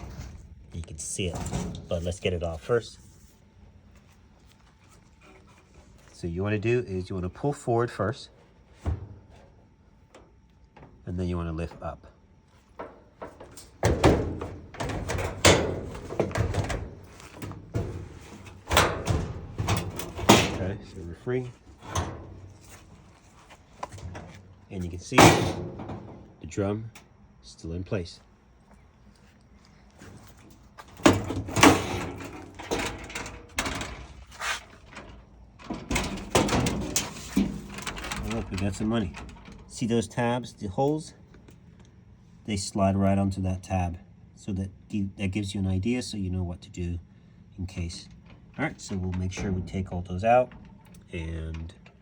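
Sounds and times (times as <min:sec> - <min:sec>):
sheet-metal panel clunks and rattles: 0:01.2 - 0:02.1, 0:08.8 - 0:09.5, 0:12.7 - 0:21.1, 0:21.7 - 0:23.1, 0:23.8 - 0:24.5, 0:25.1 - 0:26.3, 0:30.8 - 0:39.8.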